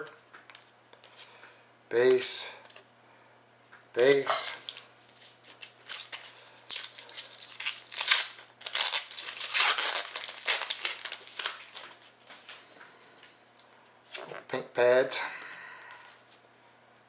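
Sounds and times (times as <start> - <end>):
packaging crinkling: 4.4 - 12.3.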